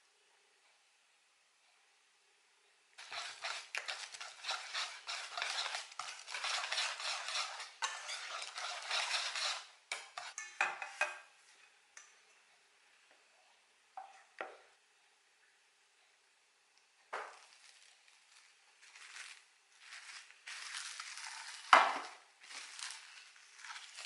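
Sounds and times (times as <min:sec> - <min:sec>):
utensil scraping against dish: 0:03.0 - 0:11.1, 0:19.0 - 0:24.0.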